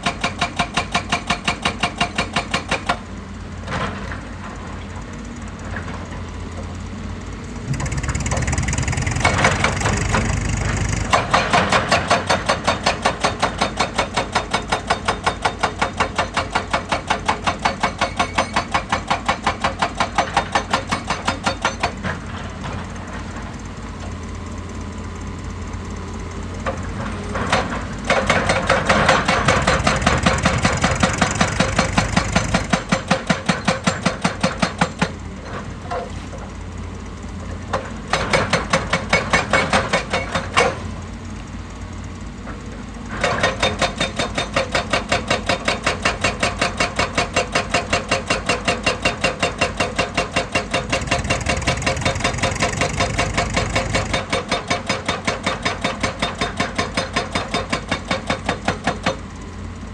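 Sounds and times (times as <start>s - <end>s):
machinery hammering rock: 0.0s - 3.1s, 7.5s - 23.5s, 26.6s - 35.9s, 37.7s - 40.9s, 43.0s - 59.4s
diesel engine running: 2.0s - 18.0s, 18.8s - 59.9s.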